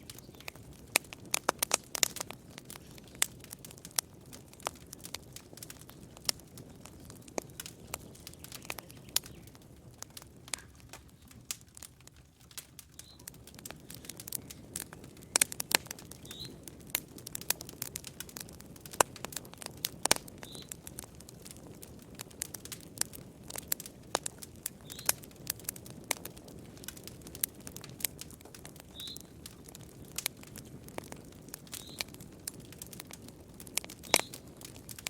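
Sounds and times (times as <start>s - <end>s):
campfire wood crackling: 0.0s - 35.0s
low rush of flame: 0.0s - 35.0s.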